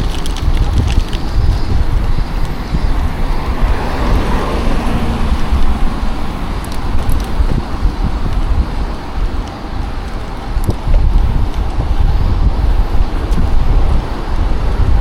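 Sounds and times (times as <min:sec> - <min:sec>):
motor vehicle passing: 0:00.0 - 0:15.0
wind buffeting microphone: 0:00.0 - 0:15.0.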